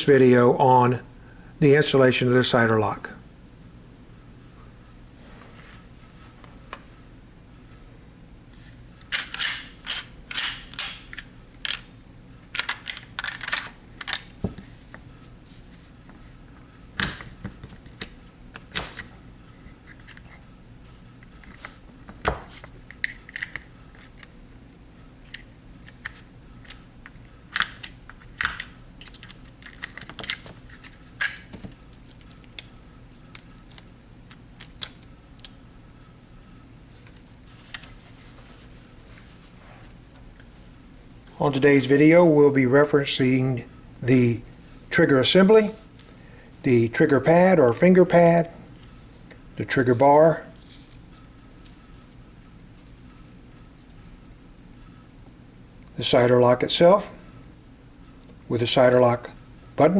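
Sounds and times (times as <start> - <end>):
metal parts clicking and clinking: 9.1 - 11.8, 12.5 - 14.2, 27.6 - 32.7.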